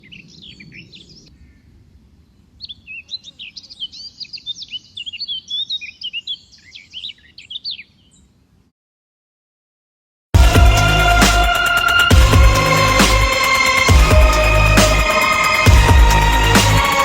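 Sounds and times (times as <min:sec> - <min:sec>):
birdsong chirps and whistles: 0:00.0 - 0:08.4.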